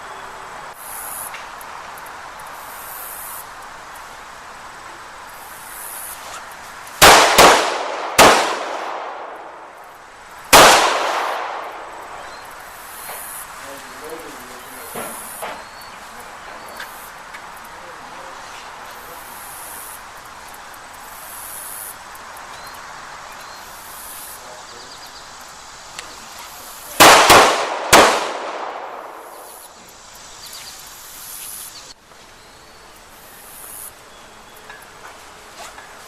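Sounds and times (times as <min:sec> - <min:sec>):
steady hiss: 0:00.0 - 0:36.0
handgun shots: 0:07.0 - 0:09.4, 0:27.0 - 0:29.4.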